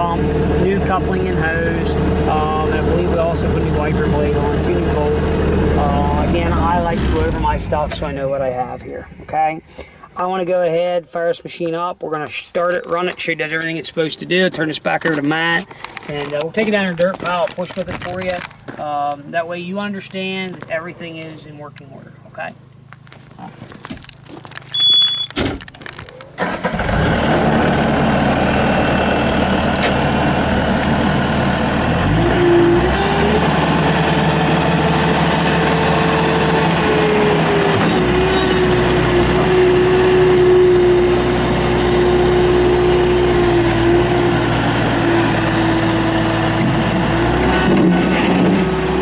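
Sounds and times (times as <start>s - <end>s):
diesel engine running: 0.0s - 10.0s, 25.8s - 49.0s
rising whine: 0.2s - 9.1s
short high beep: 24.7s - 25.4s.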